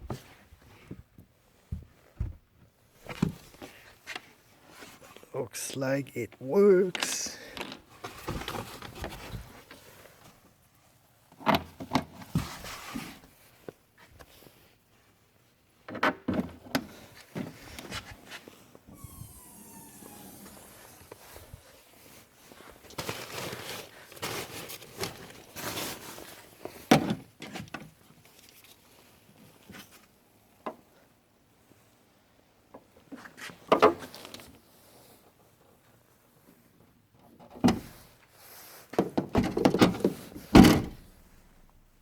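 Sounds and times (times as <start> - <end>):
rustling and scraping: 0.1 - 5.3, 6.9 - 10.6, 12.0 - 15.0, 16.9 - 30.2, 33.1 - 41.9
sharp knocks and thunks: 1.7 - 2.4, 39.0 - 41.1.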